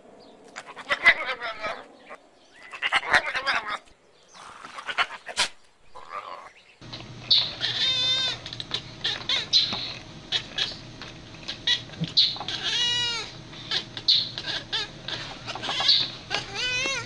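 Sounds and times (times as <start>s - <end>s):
animal quavering cry: 0.6s - 3.9s, 4.8s - 17.0s
steady low hum: 6.8s - 17.0s
clicks: 8.3s - 12.5s.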